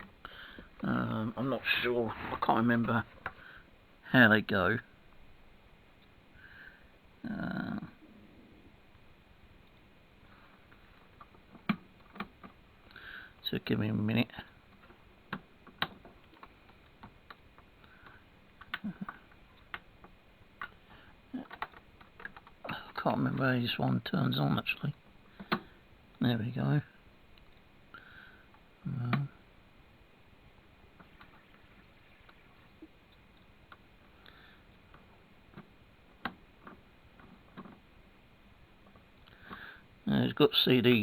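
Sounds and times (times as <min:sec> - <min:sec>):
hi-fi buttons clicking: 0:30.9 - 0:34.2.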